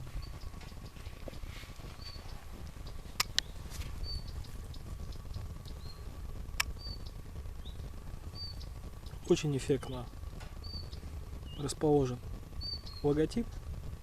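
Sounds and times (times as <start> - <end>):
small bird chirping: 0.0 - 13.7
fire crackling pops: 0.0 - 14.0
stove fire low rumble: 0.0 - 14.0.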